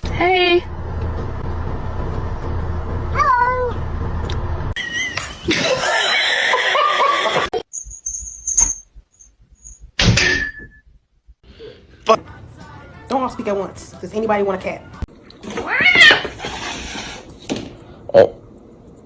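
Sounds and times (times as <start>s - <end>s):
cat meowing: 15.4s - 16.4s.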